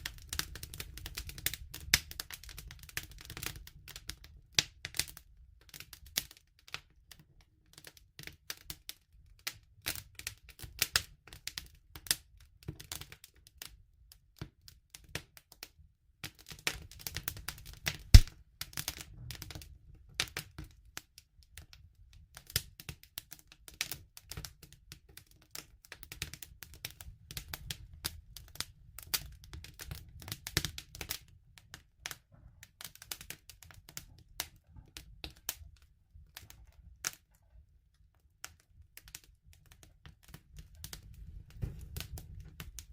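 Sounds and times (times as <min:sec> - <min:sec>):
low steady fire rumble: 0:00.0 - 0:42.9
campfire crackling and popping: 0:16.9 - 0:18.4.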